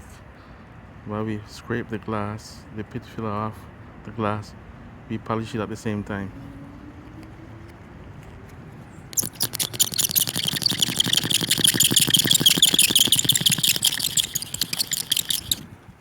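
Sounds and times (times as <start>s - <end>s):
blade scraping glass: 9.2s - 15.6s.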